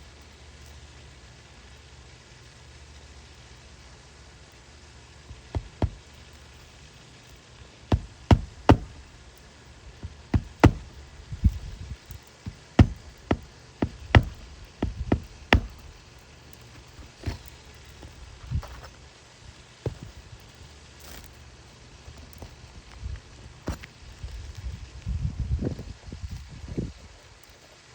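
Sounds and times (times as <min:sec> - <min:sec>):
steady low hiss: 0:00.0 - 0:27.9
sharp knocks: 0:05.5 - 0:06.2, 0:07.9 - 0:09.1, 0:10.0 - 0:11.8, 0:12.5 - 0:16.0.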